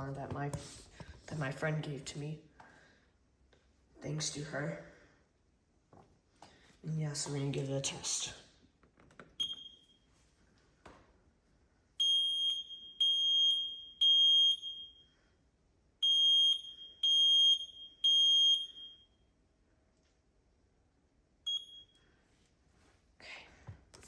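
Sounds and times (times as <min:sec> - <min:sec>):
fire alarm beeping: 0:09.4 - 0:10.1, 0:12.0 - 0:15.2, 0:16.0 - 0:19.3, 0:21.4 - 0:22.0.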